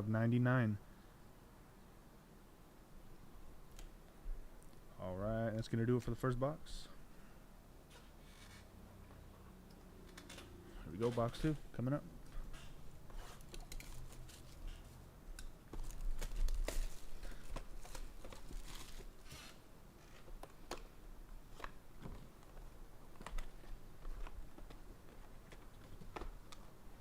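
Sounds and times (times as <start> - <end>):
packaging rustling and tearing: 15.8 - 20.8.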